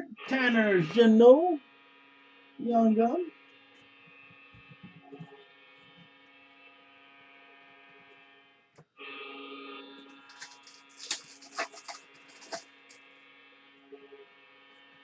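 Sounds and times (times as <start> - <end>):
electrical hum: 10.0 - 12.9
foil wrappers crinkling: 10.3 - 12.6.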